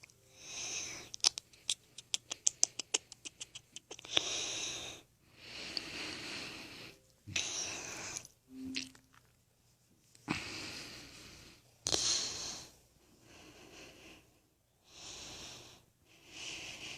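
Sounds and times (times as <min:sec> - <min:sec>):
person breathing heavily: 0:00.3 - 0:01.1, 0:04.0 - 0:08.3, 0:10.3 - 0:16.9.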